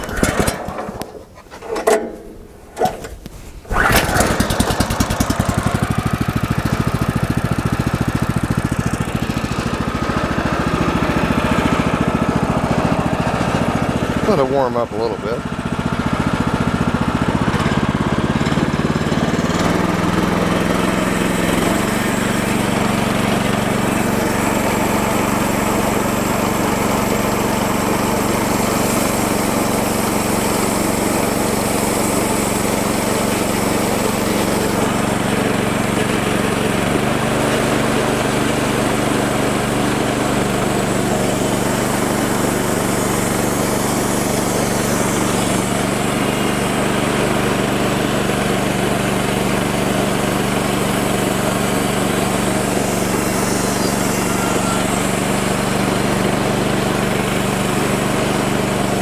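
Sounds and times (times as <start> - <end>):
small gasoline engine running: 0.0 - 59.0.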